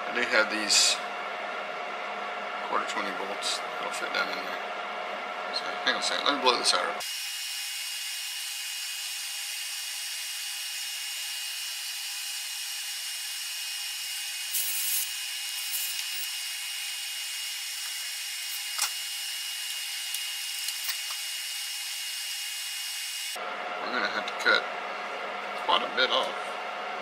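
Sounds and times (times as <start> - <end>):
compressed air blow gun hissing: 14.2 - 16.1.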